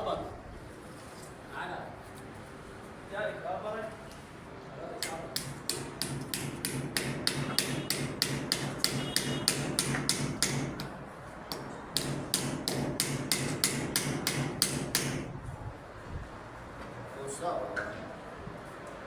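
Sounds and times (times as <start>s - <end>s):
rapid sharp knocking: 5.0s - 15.3s.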